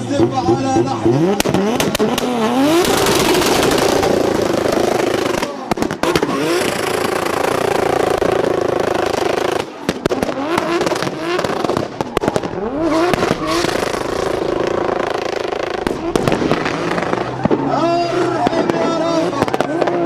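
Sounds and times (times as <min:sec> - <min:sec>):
car engine revving high: 0:00.0 - 0:20.0
exhaust crackling pops and bangs: 0:01.1 - 0:17.7
tyre screech: 0:12.6 - 0:18.4.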